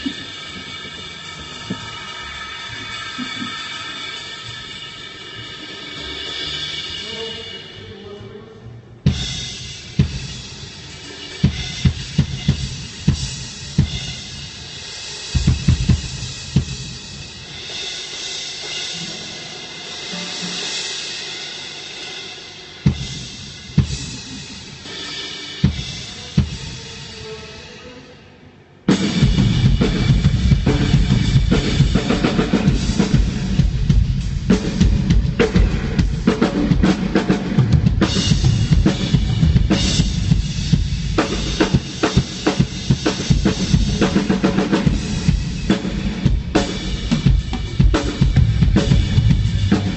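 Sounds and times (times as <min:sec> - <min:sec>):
drum kit through pa: 0:00.0 - 0:08.1, 0:09.0 - 0:27.8, 0:28.8 - 0:49.9
ringing cymbals: 0:00.0 - 0:08.1, 0:09.2 - 0:27.2.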